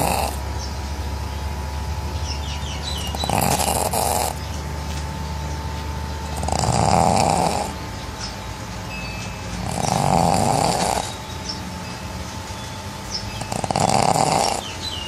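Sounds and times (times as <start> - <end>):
dog snoring: 0.0 - 0.4, 3.0 - 4.5, 6.2 - 7.8, 9.6 - 11.3, 13.3 - 14.8.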